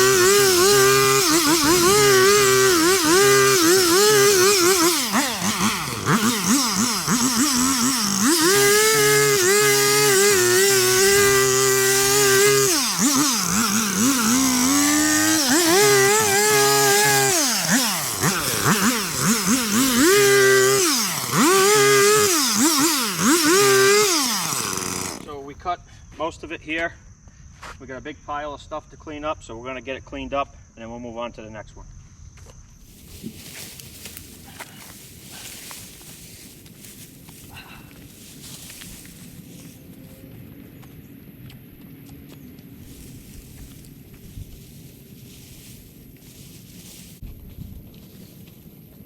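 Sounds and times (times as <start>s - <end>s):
string trimmer engine running: 0.0s - 25.4s, 32.9s - 40.6s, 42.8s - 47.2s.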